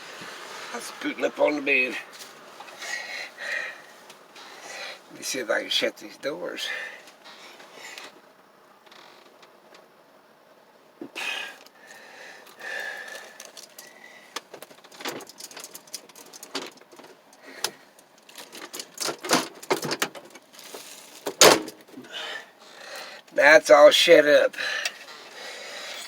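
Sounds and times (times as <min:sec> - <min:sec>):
camper doors clicking and knocking: 0:18.4 - 0:20.4, 0:21.3 - 0:21.8.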